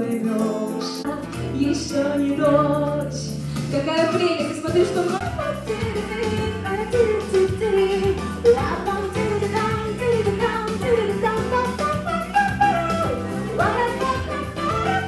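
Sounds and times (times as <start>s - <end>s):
person singing pop song: 0.0s - 15.0s
band accompaniment: 3.4s - 15.0s.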